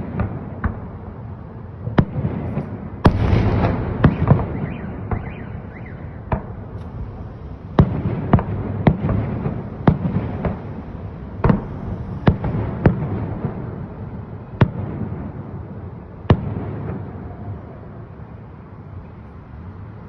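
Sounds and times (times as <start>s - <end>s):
echoing rumble: 0.0s - 17.7s
fireworks bangs: 0.0s - 18.2s.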